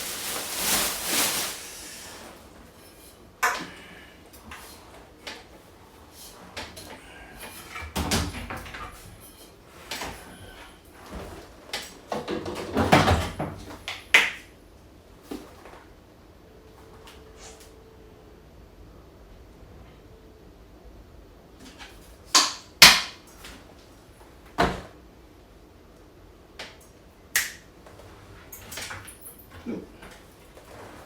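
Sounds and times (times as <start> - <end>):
rustling: 0.0 - 3.2.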